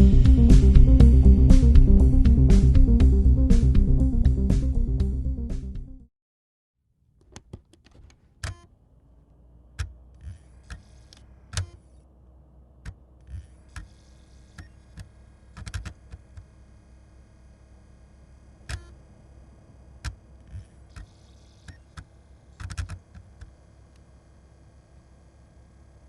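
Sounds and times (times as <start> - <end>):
faint steady hum: 7.8 - 26.0
disc player electronic clicks: 9.8 - 11.8, 12.8 - 16.5, 18.7 - 19.0, 20.0 - 23.6.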